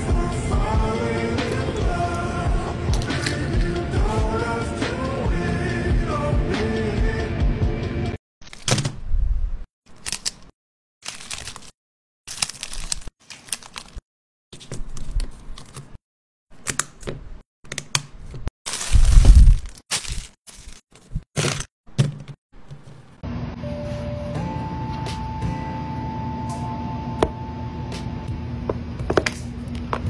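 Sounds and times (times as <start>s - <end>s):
packaging tearing and crinkling: 9.9s - 14.0s, 18.7s - 21.7s.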